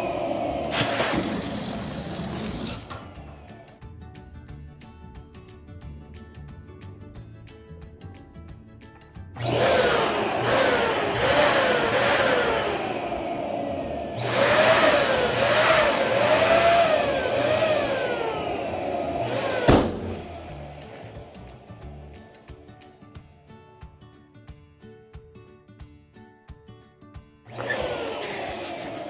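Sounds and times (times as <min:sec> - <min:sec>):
air pump hissing: 0:00.0 - 0:03.7, 0:09.4 - 0:22.2, 0:27.5 - 0:29.0
balloon popping: 0:00.7 - 0:03.4, 0:19.2 - 0:21.2.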